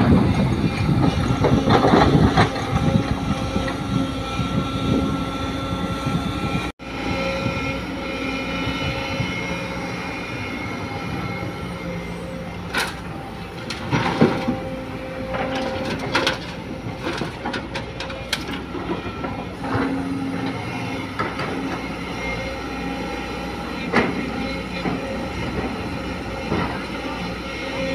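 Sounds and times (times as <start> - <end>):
excavator engine and hydraulics: 0.0 - 27.9
metallic clanks and knocks: 12.7 - 14.7, 15.3 - 19.9.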